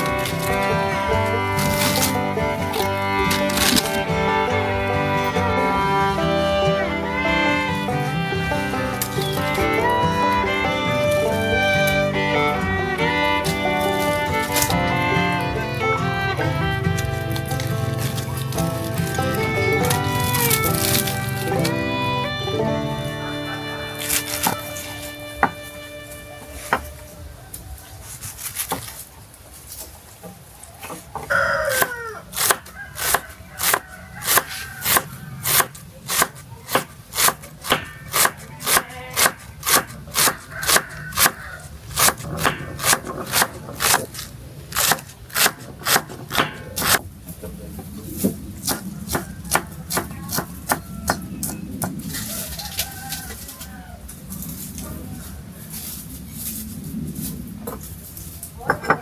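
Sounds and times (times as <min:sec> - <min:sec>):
rhythmic chopping: 0:00.0 - 0:27.0, 0:31.8 - 0:41.4, 0:42.0 - 0:44.2, 0:44.8 - 0:47.0
rooster crowing: 0:23.1 - 0:28.3, 0:31.1 - 0:35.6, 0:40.2 - 0:41.8, 0:49.0 - 0:54.4
soft knocks: 0:25.4 - 0:25.6.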